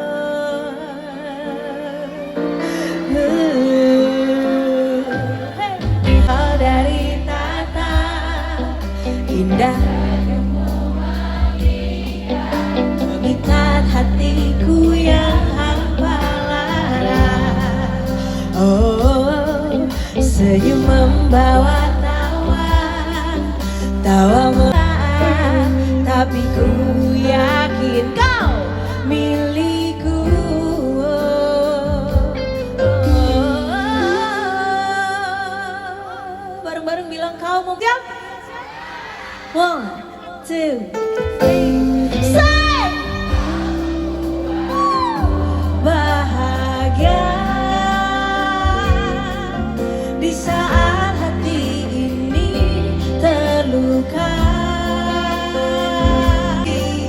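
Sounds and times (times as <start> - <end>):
people singing: 0.0 - 32.4, 33.0 - 57.0
live band playing: 2.2 - 35.5, 41.0 - 57.0
sustained bass notes: 5.8 - 34.0, 41.5 - 57.0.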